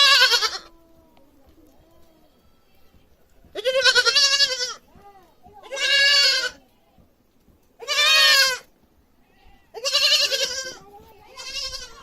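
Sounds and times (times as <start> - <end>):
goat bleating: 0.0 - 0.9, 2.0 - 6.7, 7.8 - 12.0.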